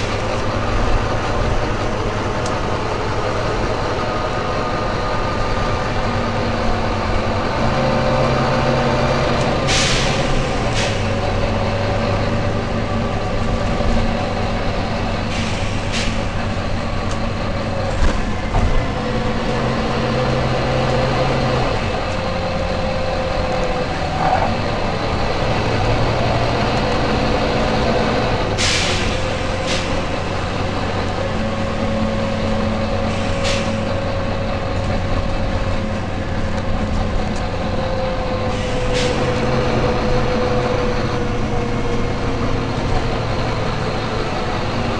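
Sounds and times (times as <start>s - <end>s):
bus engine drone: 0.0s - 44.9s
compressed air hisses: 9.7s - 11.1s, 15.3s - 16.3s, 28.6s - 30.1s, 33.1s - 33.8s.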